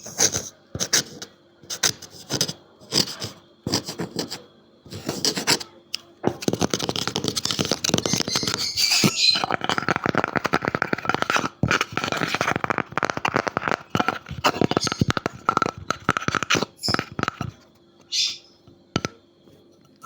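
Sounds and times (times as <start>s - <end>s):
tapping and scratching on wood: 6.3s - 17.7s.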